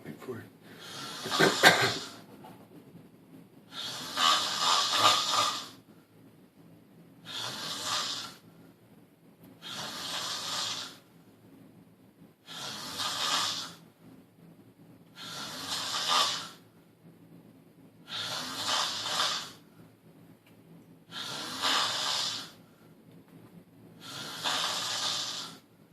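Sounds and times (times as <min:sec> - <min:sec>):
man snoring: 0:00.7 - 0:02.3, 0:03.7 - 0:05.8, 0:07.2 - 0:08.4, 0:09.6 - 0:11.0, 0:12.4 - 0:13.8, 0:15.2 - 0:16.6, 0:18.1 - 0:19.6, 0:21.1 - 0:22.6, 0:24.0 - 0:25.6.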